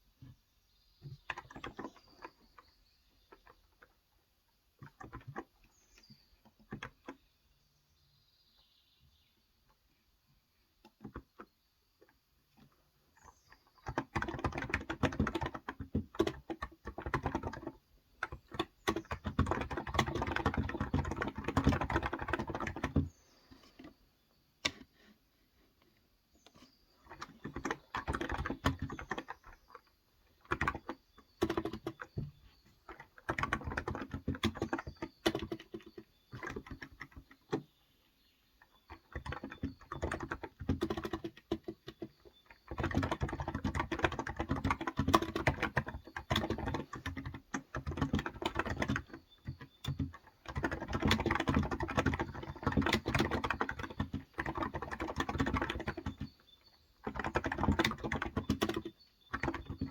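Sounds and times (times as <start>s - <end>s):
typing on keyboard: 1.0s - 2.6s, 4.8s - 7.2s, 12.6s - 23.1s, 27.0s - 37.7s, 38.6s - 59.9s.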